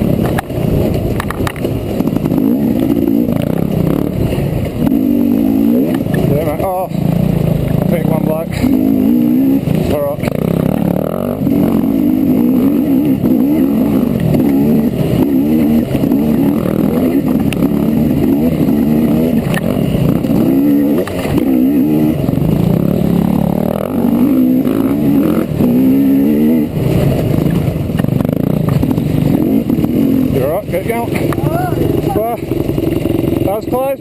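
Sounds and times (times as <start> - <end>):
motorbike engine revving: 0.0 - 34.0.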